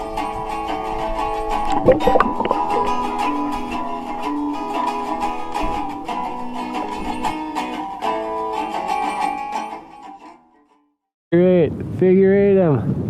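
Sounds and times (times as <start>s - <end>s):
guitar plucked and strummed: 0.0s - 10.3s.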